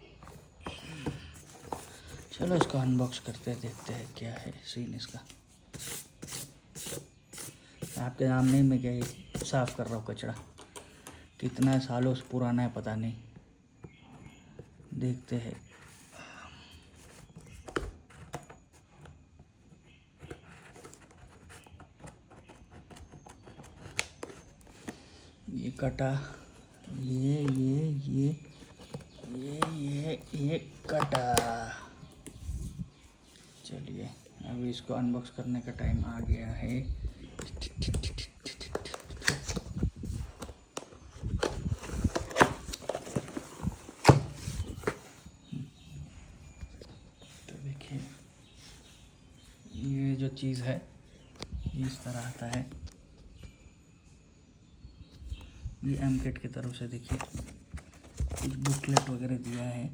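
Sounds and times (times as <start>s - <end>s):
cardboard scraping and rustling: 0.2s - 10.3s, 38.9s - 45.3s, 56.0s - 59.7s.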